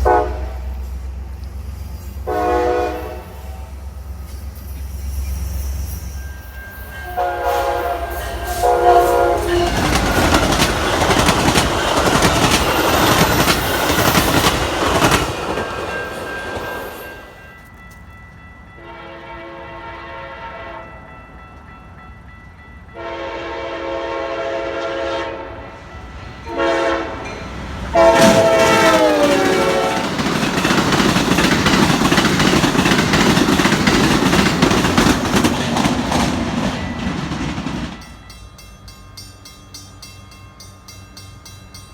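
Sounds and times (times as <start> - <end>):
locomotive horn chord blasts: 0.0 - 0.8, 2.3 - 3.6, 7.0 - 10.3, 18.8 - 21.0, 23.0 - 25.8, 26.4 - 30.3
train rumble and wheel clatter: 0.0 - 41.9.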